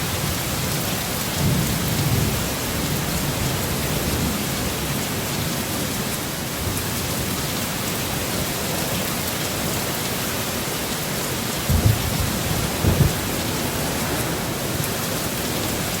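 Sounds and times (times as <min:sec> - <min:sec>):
heavy rain pouring: 0:00.0 - 0:16.0
low thumps: 0:11.7 - 0:14.0.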